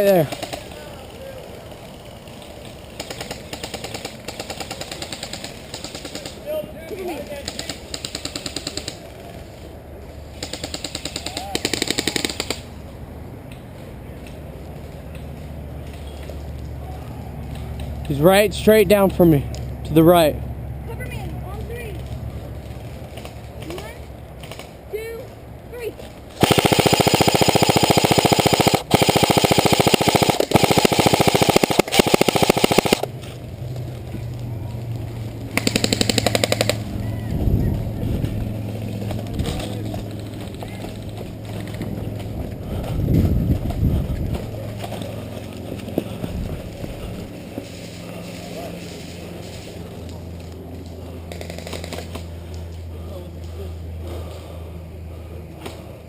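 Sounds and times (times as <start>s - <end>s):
airsoft rifle full-auto burst: 10.4s - 12.6s, 26.4s - 33.1s.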